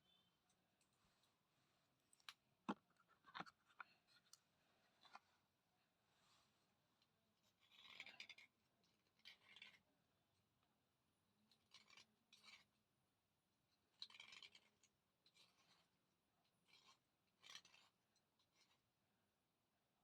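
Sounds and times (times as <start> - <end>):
slate pencil scratching: 16.6 - 18.8.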